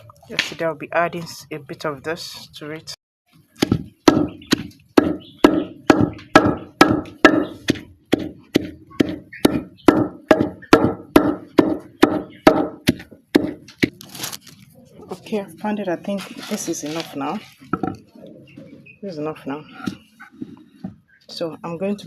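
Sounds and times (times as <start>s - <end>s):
pestle pounding in wooden mortar: 3.6s - 14.0s.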